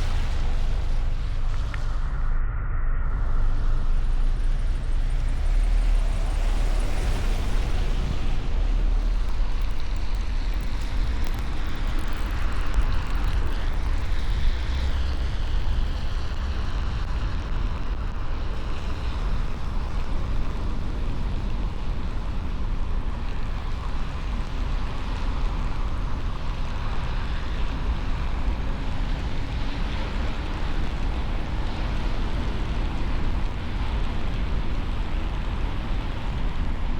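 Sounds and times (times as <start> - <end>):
car engine rumble: 0.0 - 15.2
road and wind noise: 0.0 - 36.9.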